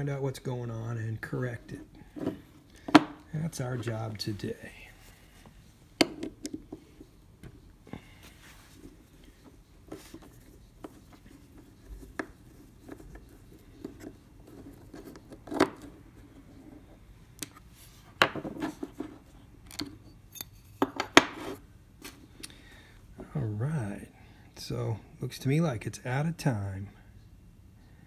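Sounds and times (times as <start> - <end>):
metal lock parts clicking and scraping: 19.6 - 21.3.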